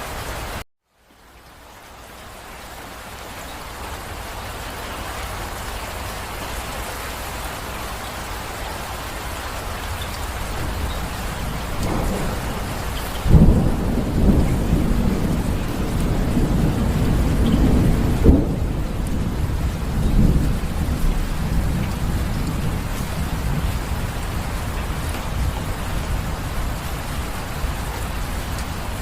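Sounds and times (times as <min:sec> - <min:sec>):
steady rain falling: 0:00.0 - 0:29.0
thunder rumbling: 0:09.5 - 0:29.0
sharp thunder clap: 0:10.6 - 0:23.8.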